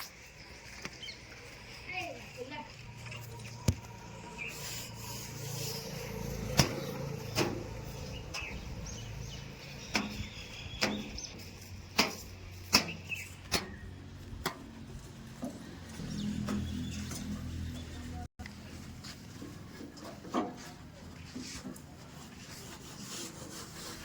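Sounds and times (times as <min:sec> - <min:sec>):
sharp metal knocks: 0:09.9 - 0:11.2.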